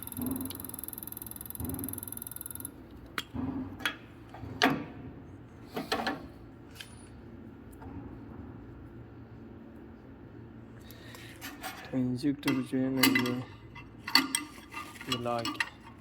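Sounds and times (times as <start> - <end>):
sharp clicks and knocks: 0.0 - 4.8.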